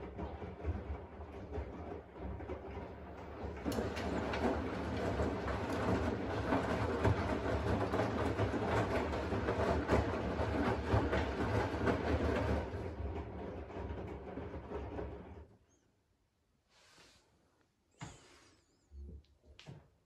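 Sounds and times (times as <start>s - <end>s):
washing machine drum rumbling: 0.0s - 15.5s
rapid clicking and knocking: 0.0s - 15.6s.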